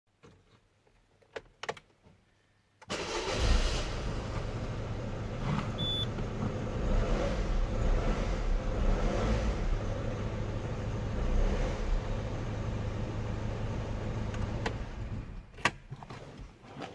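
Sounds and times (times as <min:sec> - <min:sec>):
car engine starting and idling: 0:02.9 - 0:16.0
short high-pitched beep: 0:05.8 - 0:06.1.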